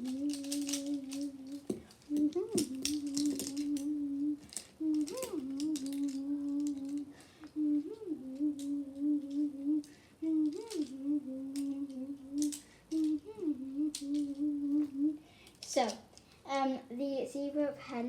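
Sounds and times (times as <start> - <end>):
clicks and rustles of handling: 0.0 - 7.6, 8.4 - 11.0, 11.6 - 13.3
person humming: 0.0 - 15.2.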